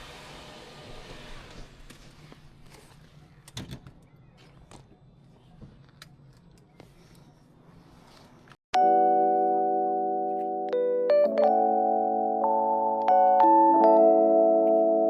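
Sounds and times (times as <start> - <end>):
electric piano chord music: 8.8 - 15.0.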